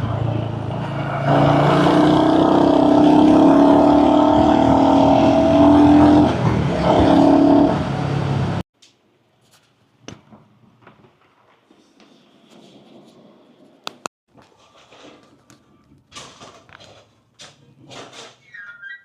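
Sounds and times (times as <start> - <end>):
motorcycle engine droning: 0.0 - 8.6.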